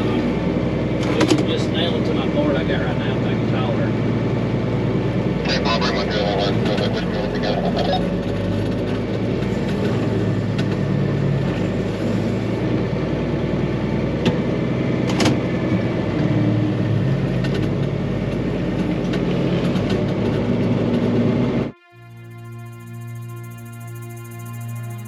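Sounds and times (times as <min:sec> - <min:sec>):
tractor engine idling: 0:00.0 - 0:14.2, 0:22.1 - 0:25.0.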